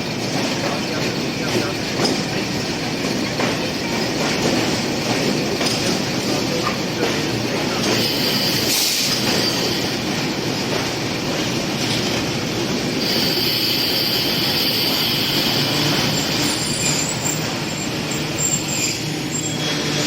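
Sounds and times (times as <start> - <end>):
train rumbling on rails: 0.0 - 20.0
high-pitched wheel squeal: 8.1 - 9.9, 13.0 - 20.0.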